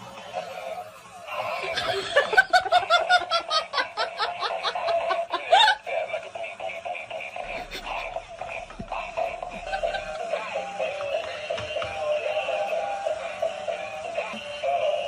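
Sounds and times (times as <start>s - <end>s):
person laughing: 1.4s - 10.7s.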